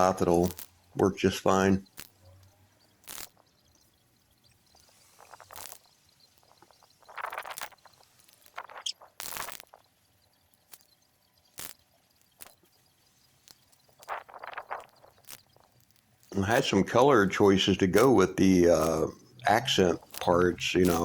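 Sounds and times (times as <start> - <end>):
sharp clicks: 13.4 - 21.0.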